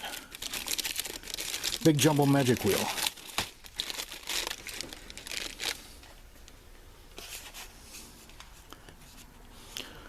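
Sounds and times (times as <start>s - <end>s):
plastic packaging rustling: 0.0s - 6.5s.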